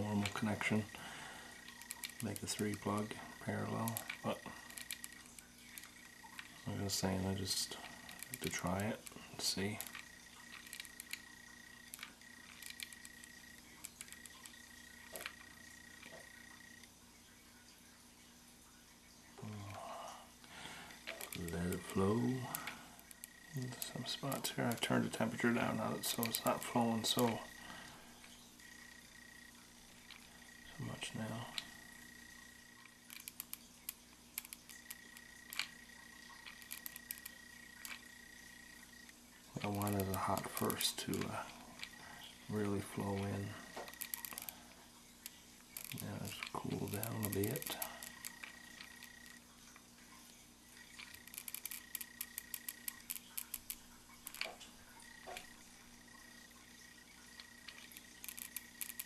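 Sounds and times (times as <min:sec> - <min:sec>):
thin high whine: 0:19.3 - 0:49.6, 0:50.2 - 0:59.0.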